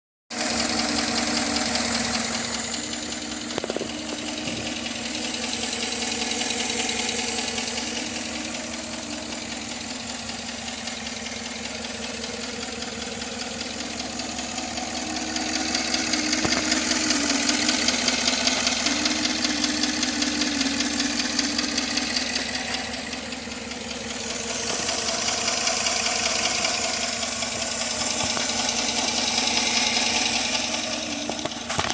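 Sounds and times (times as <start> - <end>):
engine running with ticking: 0.3 - 31.9.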